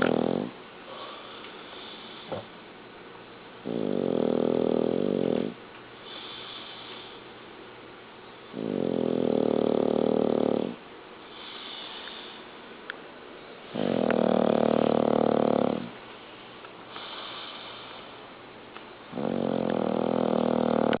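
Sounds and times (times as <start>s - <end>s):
pet snoring: 0.0s - 2.5s, 3.6s - 7.2s, 8.5s - 12.4s, 13.7s - 16.0s, 19.1s - 21.0s
breathy breathing: 0.8s - 2.6s, 11.2s - 12.7s, 15.8s - 18.3s.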